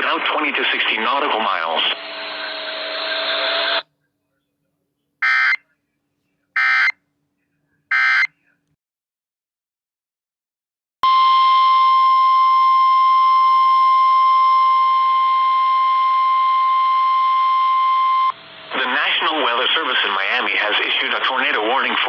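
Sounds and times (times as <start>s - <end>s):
piercing warning alarm tone: 5.2s - 5.6s, 6.6s - 7.0s, 7.9s - 8.3s.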